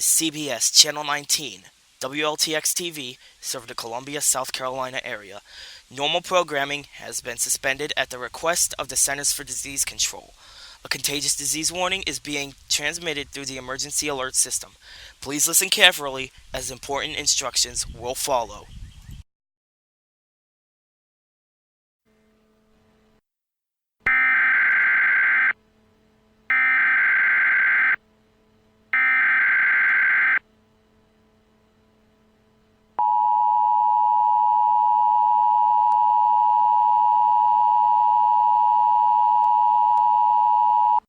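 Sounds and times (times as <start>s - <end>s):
buzzing digital data bursts: 24.1s - 25.6s, 26.5s - 28.0s, 29.0s - 30.4s
two-tone attention signal: 24.1s - 25.6s, 26.5s - 28.0s, 29.0s - 30.4s.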